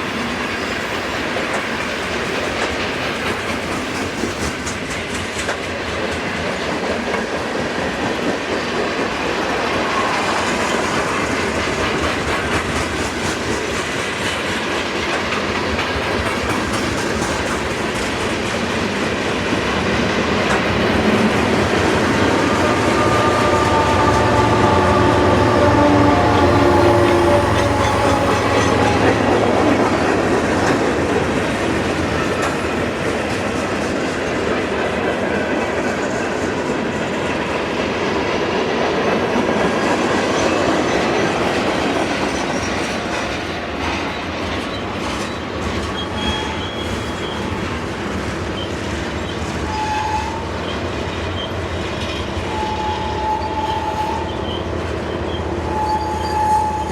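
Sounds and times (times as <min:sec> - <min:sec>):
train wheels clattering over rail joints: 0:00.0 - 0:24.6, 0:26.3 - 0:56.4
high wheel squeals: 0:21.9 - 0:29.3, 0:44.7 - 0:47.5, 0:48.6 - 0:51.6, 0:52.4 - 0:56.9.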